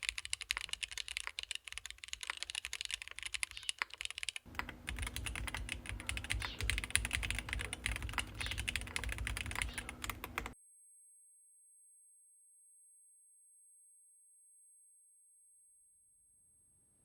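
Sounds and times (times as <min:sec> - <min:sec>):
fast typing on mechanical keyboard: 0:00.0 - 0:10.6.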